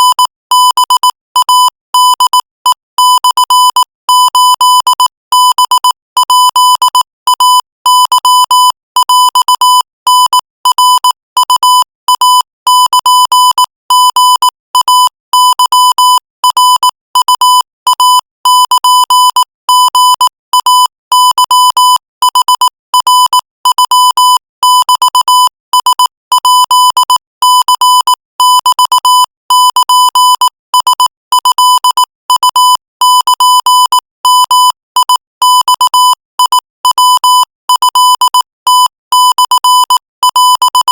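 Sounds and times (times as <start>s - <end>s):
morse code beeping tone: 25.9s - 40.9s.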